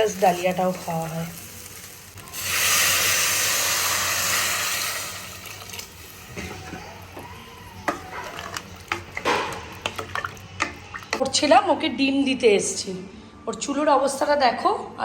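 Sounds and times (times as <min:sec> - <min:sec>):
food sizzling in a pan: 0:00.0 - 0:11.0
utensil stirring in a pan: 0:00.0 - 0:11.6.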